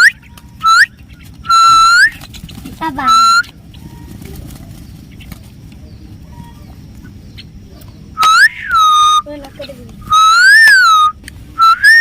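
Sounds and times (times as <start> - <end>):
whistled notes: 0.0 - 2.2, 3.0 - 3.5, 8.2 - 9.3, 10.0 - 12.0
low background rumble: 0.0 - 12.0.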